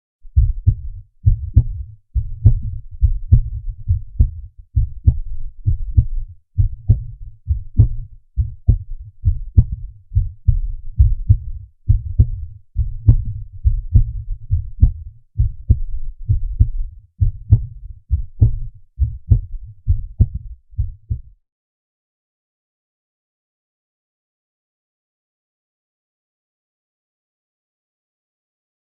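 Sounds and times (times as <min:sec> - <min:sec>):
heartbeat thumps: 0:00.2 - 0:21.4.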